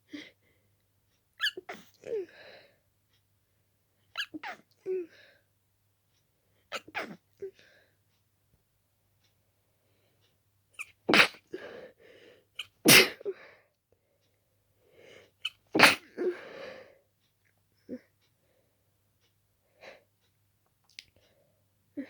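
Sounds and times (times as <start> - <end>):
person sneezing: 11.1 - 11.4, 12.8 - 13.3, 15.8 - 16.4
faint breaths: 11.5 - 12.6, 13.3 - 15.4, 16.2 - 17.1.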